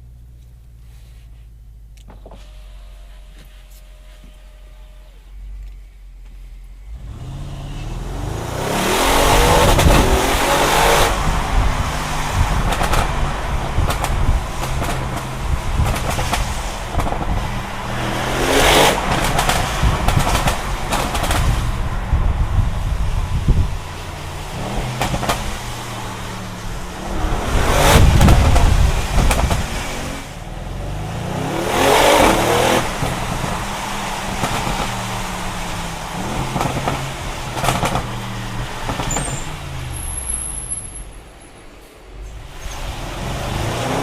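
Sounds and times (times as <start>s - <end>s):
car engine accelerating hard: 6.8s - 40.6s, 42.3s - 44.0s
exhaust crackles and pops: 11.1s - 41.3s.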